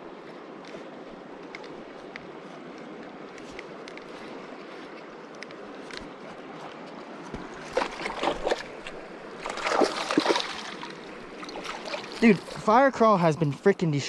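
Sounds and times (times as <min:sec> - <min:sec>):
river water rushing: 0:07.4 - 0:13.4
fish splashing at surface: 0:07.6 - 0:12.6.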